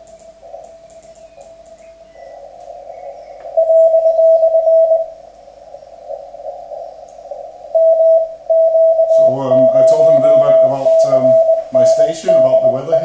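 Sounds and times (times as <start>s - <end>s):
radio hiss: 0.0s - 13.0s
morse code tone: 3.5s - 5.3s, 6.0s - 13.0s.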